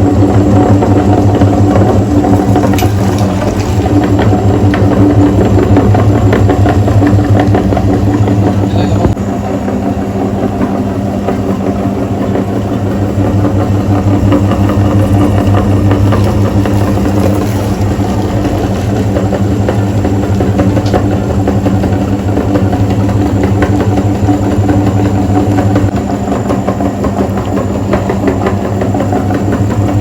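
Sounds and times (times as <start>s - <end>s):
small motor rattling: 1.5s - 9.1s, 14.2s - 25.9s.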